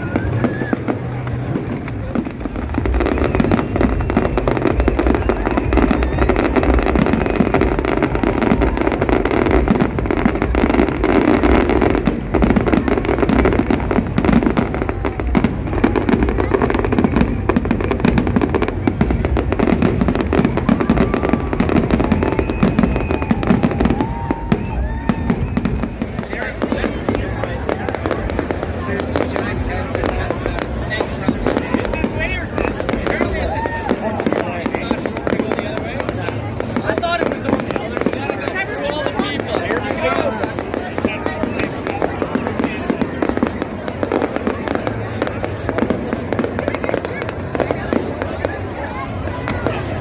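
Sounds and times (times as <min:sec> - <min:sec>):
fireworks bangs and crackles: 0:00.0 - 0:50.0.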